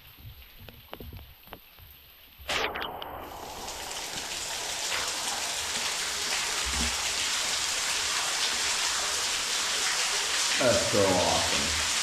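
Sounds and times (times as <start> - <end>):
water rushing and splashing: 2.4 - 12.0.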